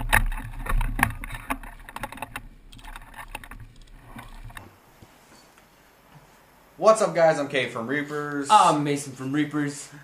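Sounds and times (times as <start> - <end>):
irregular clicks and knocks: 0.0 - 4.7.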